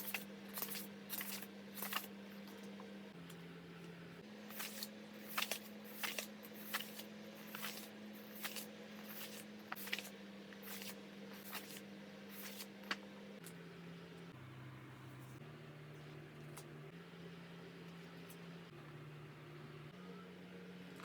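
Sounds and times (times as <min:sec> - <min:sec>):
crinkly paper and plastic rustles: 0:00.0 - 0:02.6, 0:04.5 - 0:13.0
steady low hum: 0:00.0 - 0:21.0.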